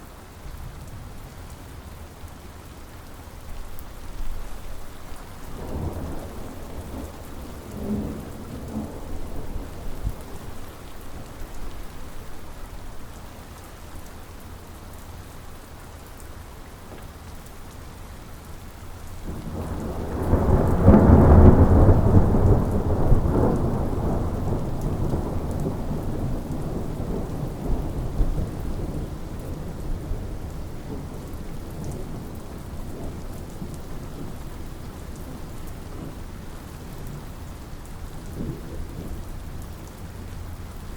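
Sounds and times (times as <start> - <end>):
steady rain falling: 0.0 - 40.9
thunder rumbling: 5.0 - 13.0, 19.3 - 36.2.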